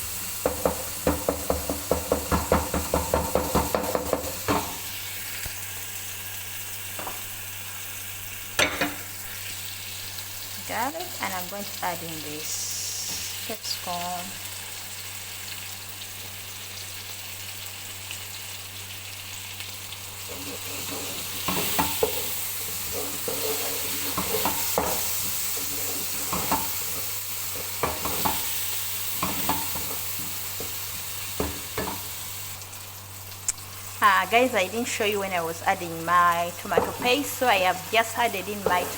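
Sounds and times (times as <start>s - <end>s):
vegetables sizzling in a pan: 0.0s - 38.9s
spoon scraping a pan: 20.2s - 32.2s, 38.4s - 38.9s.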